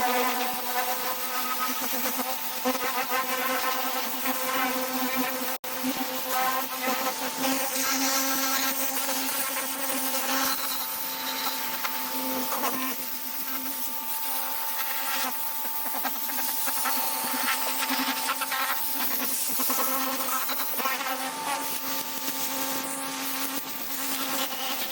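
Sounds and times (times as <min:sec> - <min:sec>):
pressure washer motor whine: 0:09.6 - 0:15.8.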